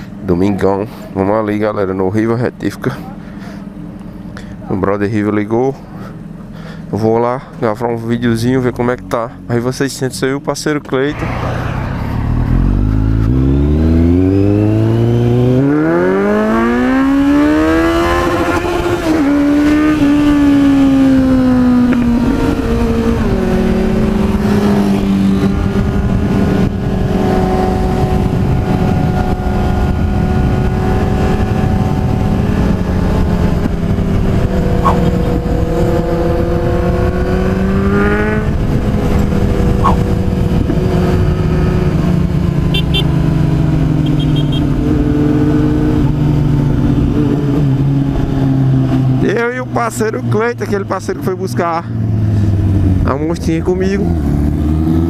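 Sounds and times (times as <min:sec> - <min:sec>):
vehicle engine accelerating hard: 0:10.9 - 0:55.0.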